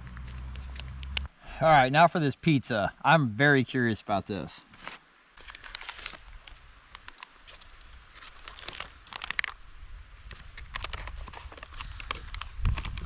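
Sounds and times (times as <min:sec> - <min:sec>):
plastic pouch crinkling: 0:04.8 - 0:09.6, 0:10.3 - 0:13.0.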